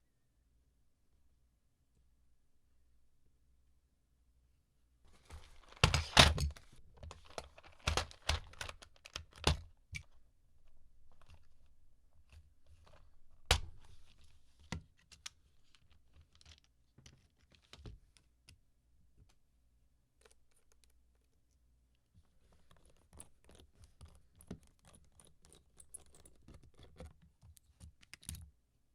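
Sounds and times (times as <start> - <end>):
keyboard parts clicking and knocking: 5.3 - 10.2, 22.7 - 28.5.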